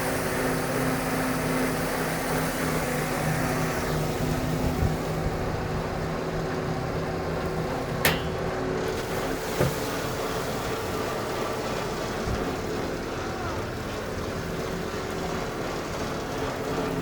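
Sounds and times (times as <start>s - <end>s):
boat engine humming: 0.0s - 17.0s
sharp knocks: 8.1s - 8.6s.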